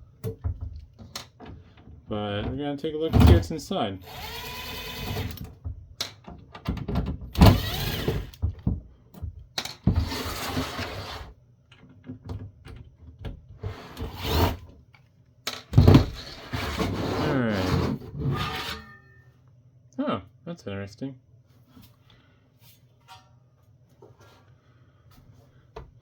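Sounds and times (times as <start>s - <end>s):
cordless drill whirring: 4.0s - 5.4s, 7.4s - 8.4s.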